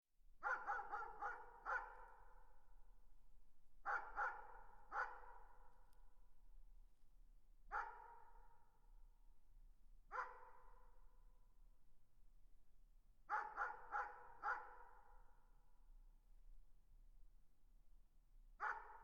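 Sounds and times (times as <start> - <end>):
distant dog barking: 0.4 - 2.1, 3.9 - 5.4, 7.7 - 8.3, 10.1 - 10.7, 13.3 - 14.8, 18.6 - 19.0.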